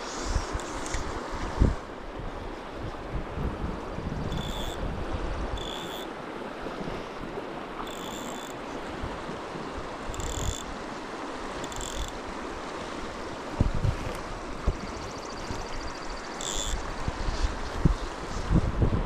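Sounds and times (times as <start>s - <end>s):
wind buffeting microphone: 0.0s - 5.8s, 12.5s - 16.2s, 16.8s - 19.0s
river water rushing: 3.8s - 18.3s.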